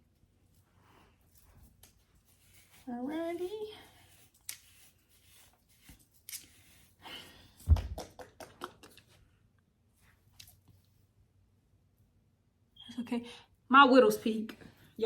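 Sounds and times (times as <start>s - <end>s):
hands rustling hair: 0.1s - 9.2s.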